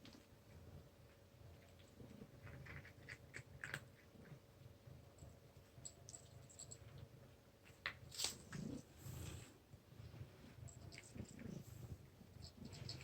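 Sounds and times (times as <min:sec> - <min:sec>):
cat chewing food: 0:00.0 - 0:05.5.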